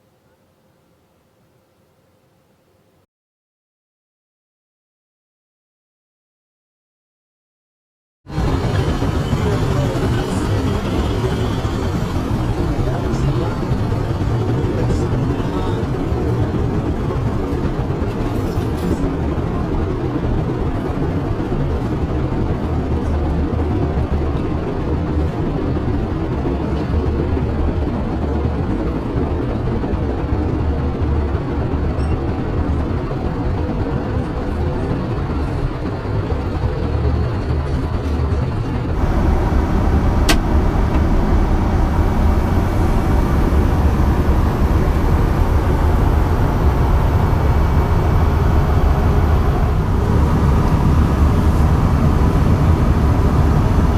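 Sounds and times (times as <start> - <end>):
aircraft cabin engine rumble: 8.3 - 53.9
sharp click: 40.2 - 40.5.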